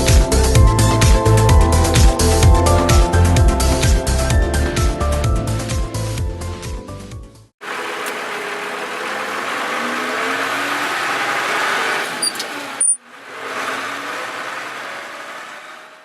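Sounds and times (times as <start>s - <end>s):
tractor engine running: 7.6s - 16.0s.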